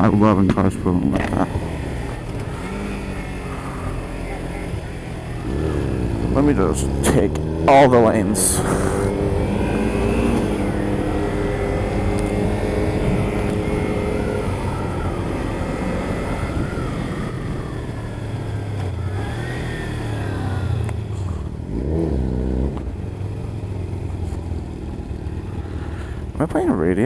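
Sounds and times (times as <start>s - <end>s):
motorcycle engine running: 0.0s - 27.0s
wind rush: 8.4s - 14.5s.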